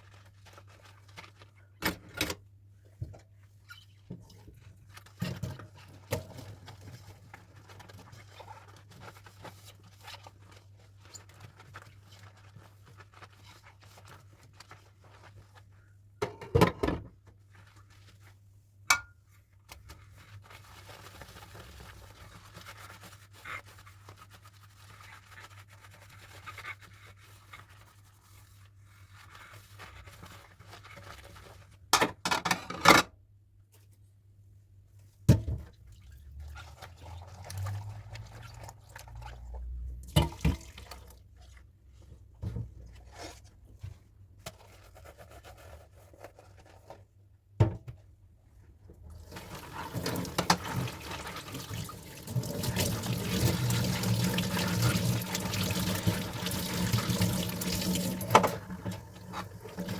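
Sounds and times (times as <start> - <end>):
dishes clinking and knocking: 16.2 - 17.0
dishes being scrubbed: 49.4 - 59.9.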